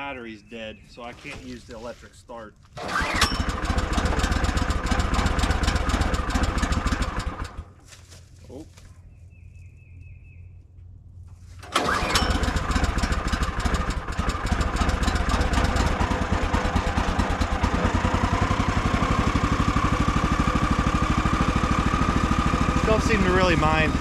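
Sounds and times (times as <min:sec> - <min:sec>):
recoil starter pull: 0:02.8 - 0:07.6, 0:11.6 - 0:24.0
gasoline engine running: 0:02.8 - 0:07.8, 0:10.8 - 0:24.0.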